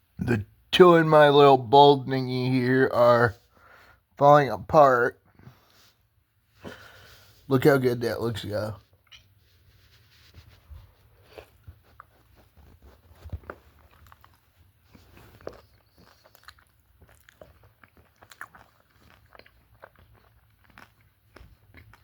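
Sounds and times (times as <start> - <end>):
person chewing and crunching food: 8.8 - 22.0.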